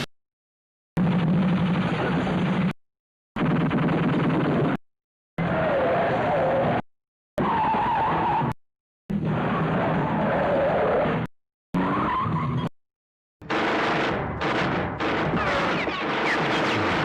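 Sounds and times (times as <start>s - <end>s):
car tyre screech: 5.4s - 6.8s, 7.4s - 12.7s.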